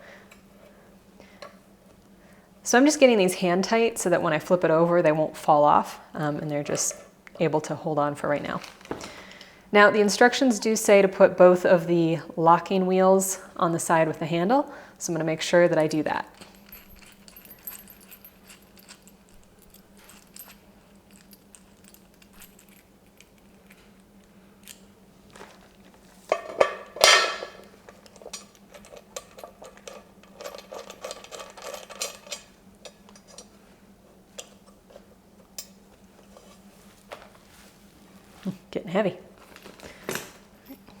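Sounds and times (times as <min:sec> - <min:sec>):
small metal hardware clinking: 0:16.4 - 0:23.8, 0:26.3 - 0:33.5
metal clatter: 0:26.3 - 0:32.5.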